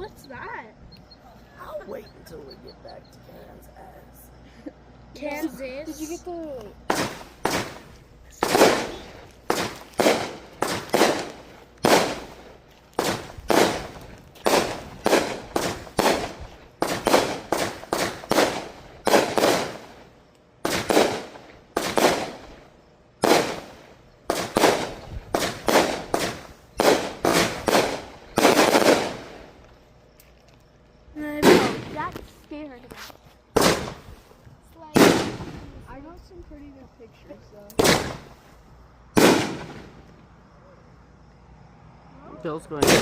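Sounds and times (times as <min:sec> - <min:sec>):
fireworks exploding: 0:06.8 - 0:29.7, 0:31.4 - 0:32.5, 0:33.5 - 0:34.3, 0:34.9 - 0:36.0, 0:37.8 - 0:38.4, 0:39.1 - 0:40.2, 0:42.8 - 0:43.0.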